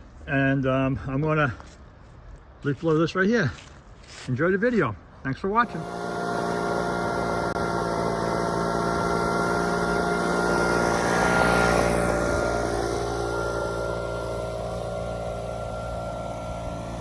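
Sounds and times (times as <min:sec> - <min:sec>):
air rushing from nozzle: 0:05.6 - 0:17.0
leaf blower engine hum: 0:05.6 - 0:17.0.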